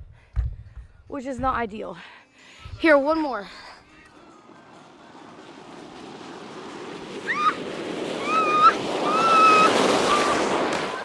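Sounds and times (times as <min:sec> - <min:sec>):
sled scraping on ice: 0:05.0 - 0:11.0.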